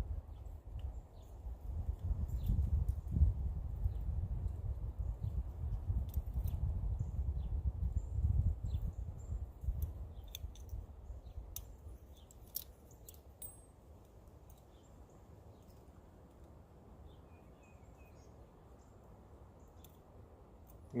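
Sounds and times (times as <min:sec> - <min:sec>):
faint outdoor background: 0:00.0 - 0:21.0
light sharp clicks: 0:19.6 - 0:21.0.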